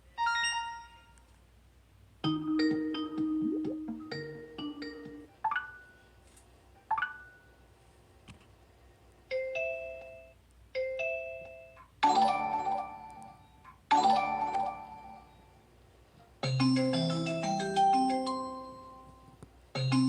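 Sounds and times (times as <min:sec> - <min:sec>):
phone notification tones: 0:02.3 - 0:05.7.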